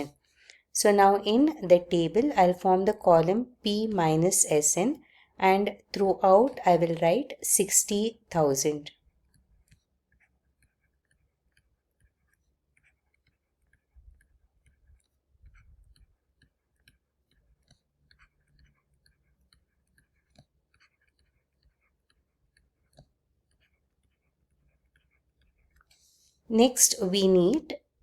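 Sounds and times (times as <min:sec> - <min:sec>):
pen scratching while handwriting: 0:09.0 - 0:26.2.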